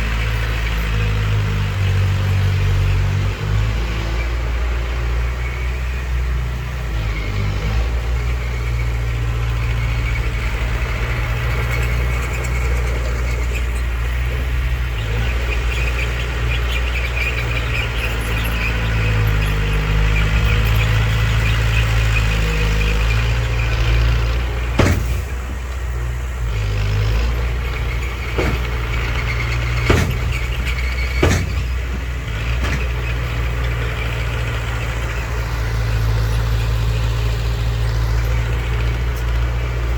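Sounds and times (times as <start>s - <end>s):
heavy diesel machinery drone: 0.0s - 39.9s
sharp knocks: 24.0s - 33.2s.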